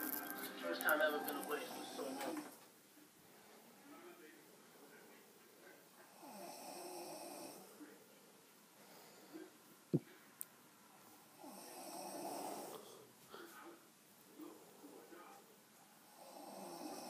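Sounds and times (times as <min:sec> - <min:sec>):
person snoring: 0:16.1 - 0:17.0.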